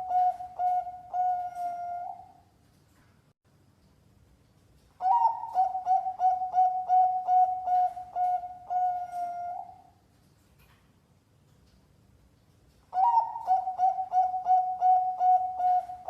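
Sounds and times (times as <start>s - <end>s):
dove cooing: 0.0s - 2.4s, 5.0s - 9.9s, 12.9s - 16.0s.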